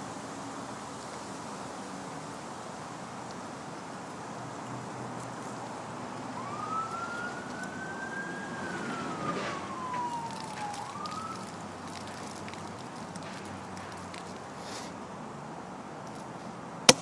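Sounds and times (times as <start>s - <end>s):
outdoor background noise: 0.0s - 17.0s
distant siren wailing: 6.0s - 13.4s.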